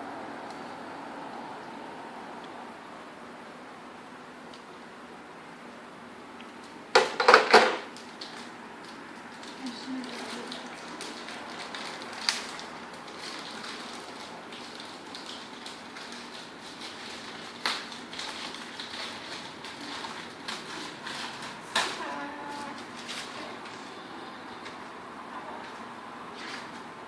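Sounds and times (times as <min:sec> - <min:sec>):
packaging rustling and scraping: 0:08.0 - 0:24.8, 0:25.6 - 0:26.8.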